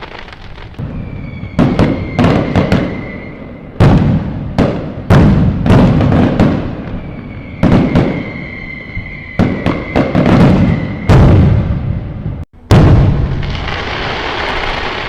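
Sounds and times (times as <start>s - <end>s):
fireworks booming and crackling: 0.0s - 15.0s
steady high whistle: 0.8s - 3.8s, 6.8s - 11.4s.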